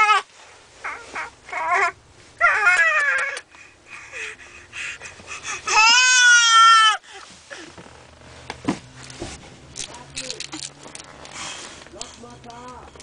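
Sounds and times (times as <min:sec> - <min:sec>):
baby squealing: 0:00.0 - 0:03.5, 0:04.1 - 0:07.0
baby crying: 0:00.0 - 0:07.6.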